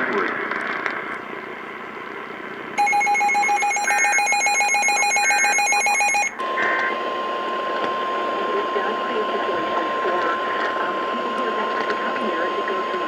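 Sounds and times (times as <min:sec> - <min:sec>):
pulsing buzzing alarm tone: 0:02.8 - 0:06.4.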